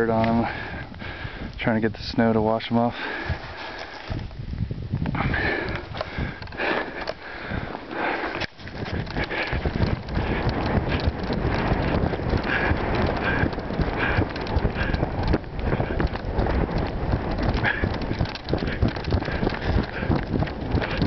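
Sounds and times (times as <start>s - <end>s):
shoes crunching in icy snow: 3.1s - 4.3s.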